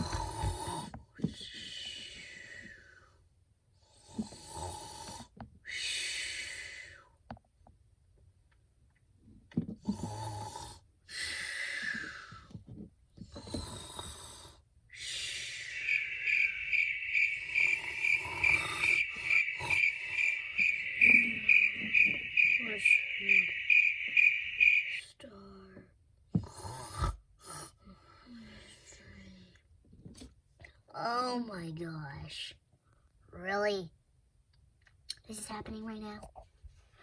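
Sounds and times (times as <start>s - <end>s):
raspy snoring: 0.0s - 1.0s, 3.9s - 5.3s, 9.8s - 12.5s, 13.2s - 16.0s, 17.4s - 20.3s, 26.4s - 27.8s
high-pitched chirping: 15.0s - 25.1s.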